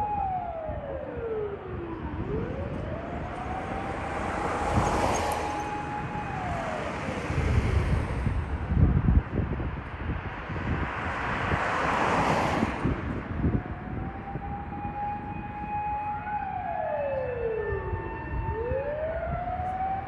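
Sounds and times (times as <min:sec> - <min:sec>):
mechanical siren wailing: 0:00.0 - 0:08.0, 0:13.4 - 0:20.0
wind buffeting microphone: 0:00.0 - 0:20.0.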